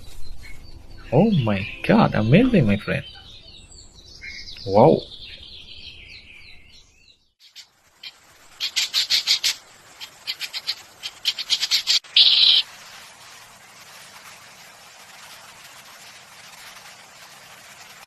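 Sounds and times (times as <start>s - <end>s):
bird chirping: 0.0s - 12.6s.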